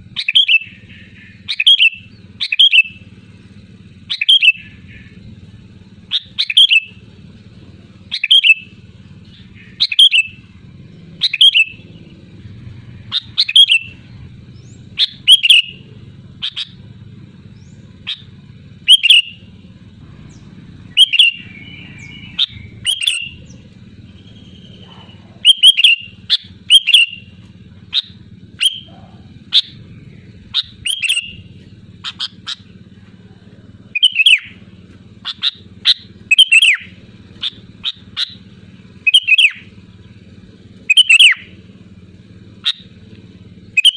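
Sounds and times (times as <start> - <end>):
bulbul calling: 0.0 - 43.9
steady low hum: 0.0 - 43.9.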